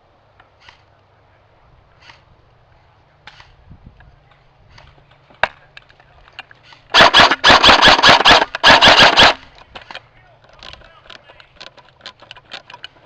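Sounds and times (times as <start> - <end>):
airsoft rifle full-auto burst: 6.9 - 9.5.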